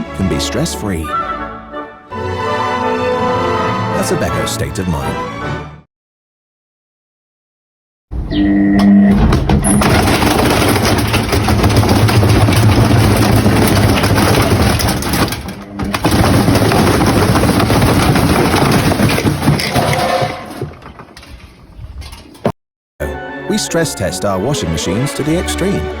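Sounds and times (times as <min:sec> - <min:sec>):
machine clattering and banging: 0:09.1 - 0:22.5.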